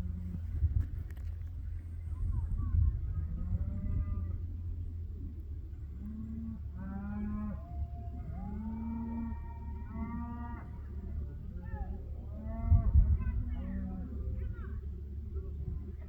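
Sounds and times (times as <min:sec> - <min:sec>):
low rumble: 0:00.0 - 0:16.0
cattle mooing: 0:05.9 - 0:11.0.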